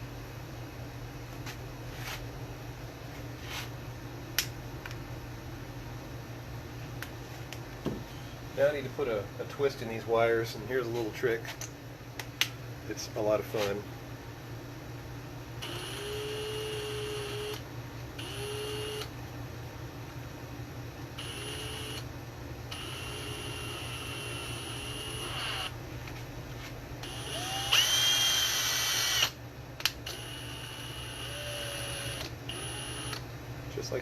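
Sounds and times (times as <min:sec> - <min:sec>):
electric drill whining: 0:15.6 - 0:17.6, 0:18.2 - 0:19.1, 0:21.2 - 0:22.0, 0:22.7 - 0:25.7, 0:27.0 - 0:29.4, 0:30.1 - 0:33.2.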